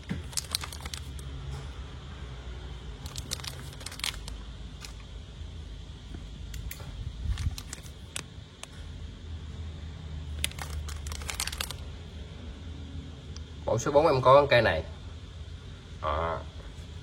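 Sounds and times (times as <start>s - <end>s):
plastic wrapping crinkling: 0.0s - 1.4s, 2.9s - 5.1s, 7.2s - 8.3s, 10.3s - 11.9s.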